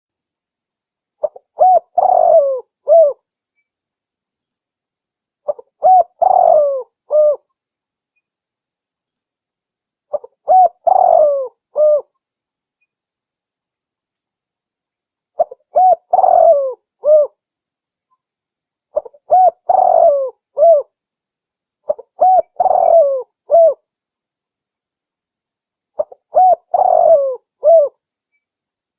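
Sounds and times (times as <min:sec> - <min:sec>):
dove cooing: 0:01.2 - 0:03.2, 0:05.5 - 0:07.4, 0:10.1 - 0:12.1, 0:15.4 - 0:17.4, 0:19.0 - 0:20.9, 0:21.9 - 0:23.8, 0:26.0 - 0:28.0.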